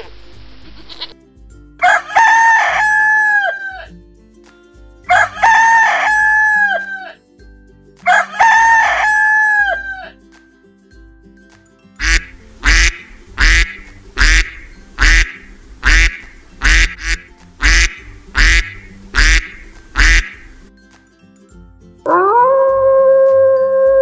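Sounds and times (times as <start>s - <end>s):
faint background music: 0.0s - 24.0s
rooster crowing: 1.8s - 3.9s, 5.1s - 7.2s, 8.1s - 10.1s, 22.1s - 24.0s
duck quacking: 12.0s - 20.6s.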